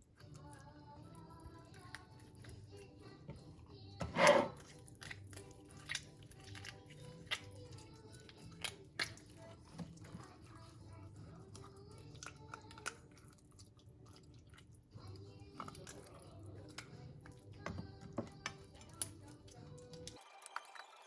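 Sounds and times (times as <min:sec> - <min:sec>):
quiet background music: 0:00.0 - 0:21.0
wet squishes of hands rubbing fish: 0:04.5 - 0:17.5.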